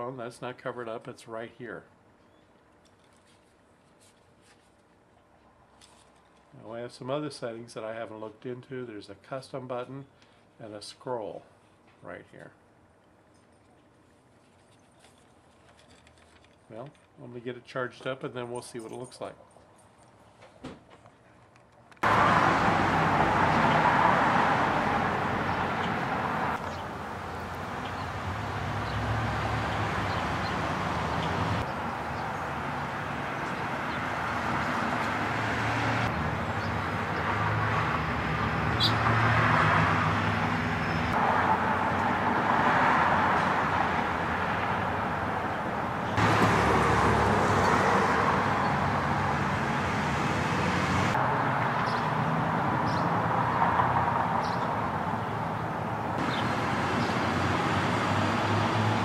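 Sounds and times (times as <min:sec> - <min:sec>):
low traffic hum: 0:00.0 - 0:59.0
passing cars rushing: 0:22.0 - 0:59.0.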